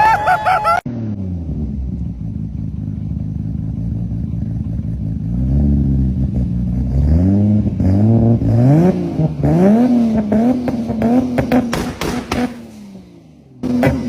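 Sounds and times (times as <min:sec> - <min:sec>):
car engine idling: 0:01.2 - 0:07.0.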